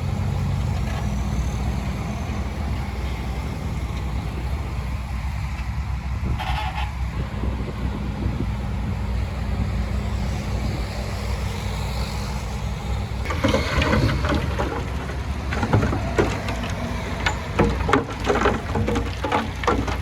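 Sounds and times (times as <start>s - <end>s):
diesel engine droning: 0.0s - 20.0s
metal clanks and rattles: 13.2s - 20.0s.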